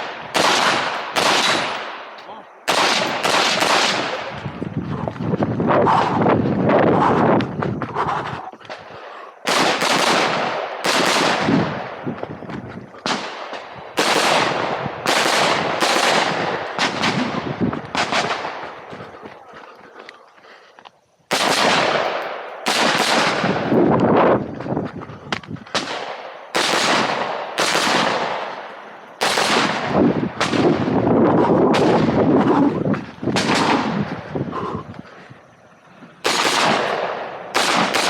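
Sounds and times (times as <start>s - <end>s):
rifle shots echoing: 0.0s - 4.4s, 9.4s - 12.0s, 13.0s - 18.9s, 21.3s - 23.8s, 25.8s - 31.0s, 33.3s - 34.3s, 36.2s - 38.0s.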